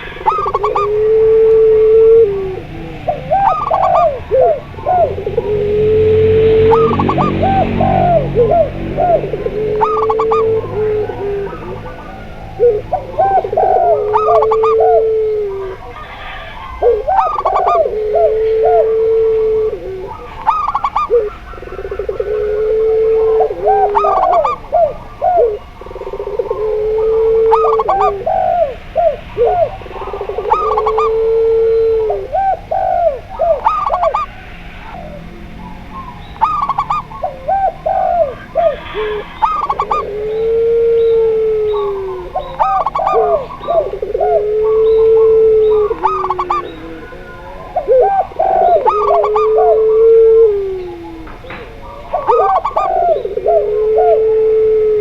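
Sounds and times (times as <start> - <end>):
doves cooing: 0.0 - 55.0.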